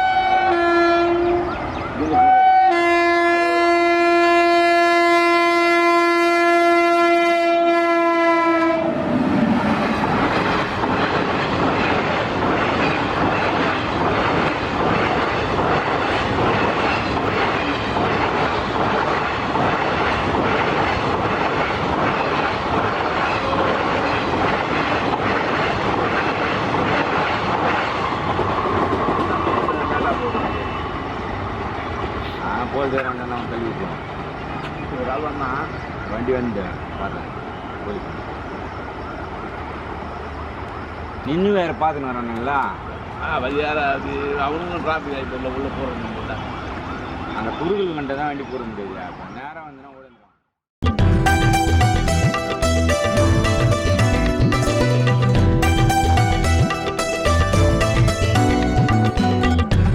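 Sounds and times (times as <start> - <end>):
locomotive horn blasts: 0.0 - 9.1
train wheels clattering on rails: 9.3 - 33.6.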